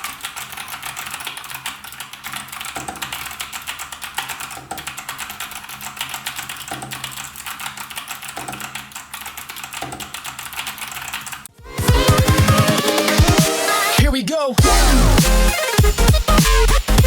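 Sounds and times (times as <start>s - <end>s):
mechanical keyboard typing: 0.0s - 12.7s
loud electronic music with bass: 11.6s - 17.0s.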